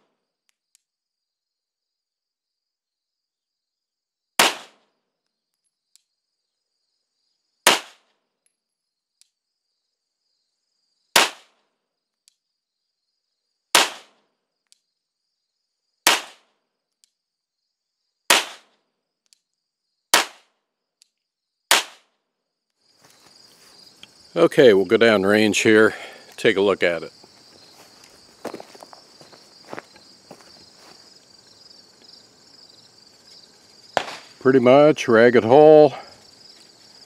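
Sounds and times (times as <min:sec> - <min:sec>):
pistol shots: 0:04.4 - 0:04.8, 0:07.7 - 0:08.0, 0:11.2 - 0:11.6, 0:13.8 - 0:14.2, 0:16.1 - 0:16.4, 0:18.3 - 0:18.7, 0:20.2 - 0:20.5, 0:21.7 - 0:22.1, 0:34.0 - 0:34.3.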